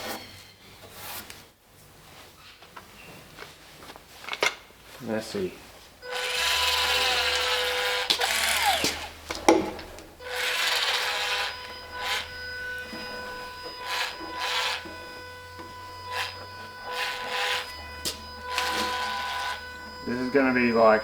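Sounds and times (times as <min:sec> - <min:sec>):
tool rasping on wood: 0:06.1 - 0:21.0.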